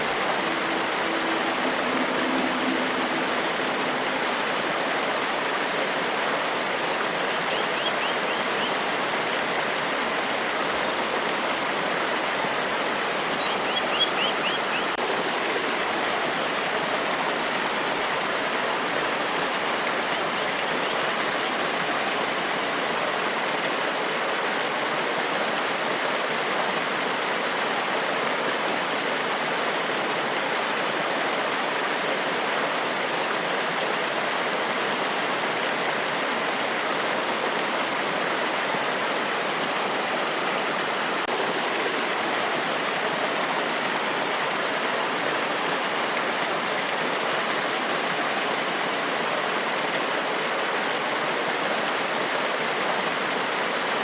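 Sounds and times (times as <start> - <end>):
waterfall rushing over rocks: 0.0 - 54.0
bird chirping trills: 0.1 - 4.3, 12.9 - 15.0.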